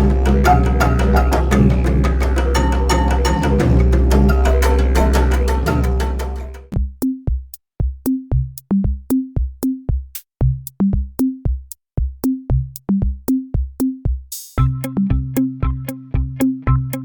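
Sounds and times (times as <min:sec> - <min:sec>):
synth chords: 0:00.0 - 0:06.8
short bass notes: 0:00.0 - 0:07.2, 0:14.6 - 0:17.0
drum machine beat: 0:00.0 - 0:17.0.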